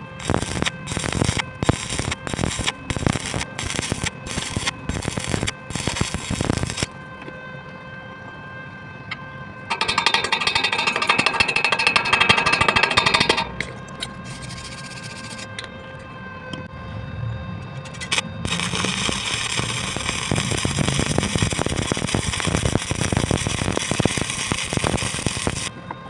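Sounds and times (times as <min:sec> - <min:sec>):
arc welding crackle and buzz: 0:00.0 - 0:07.1, 0:09.7 - 0:15.5, 0:17.8 - 0:25.8
steady machine hum: 0:00.0 - 0:26.0.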